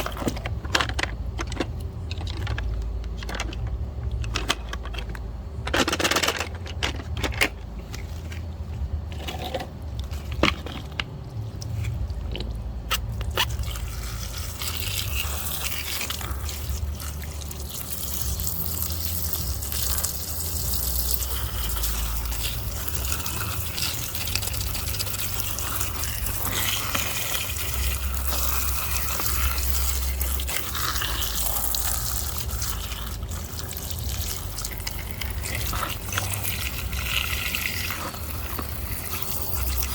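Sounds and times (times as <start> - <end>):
running water spraying: 13.6 - 39.9.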